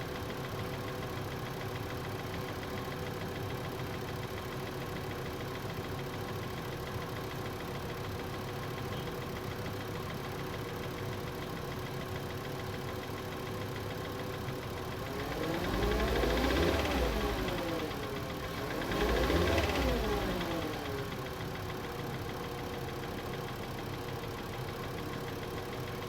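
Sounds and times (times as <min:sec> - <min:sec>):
car engine idling: 0:00.1 - 0:26.0
car engine revving: 0:15.1 - 0:20.9.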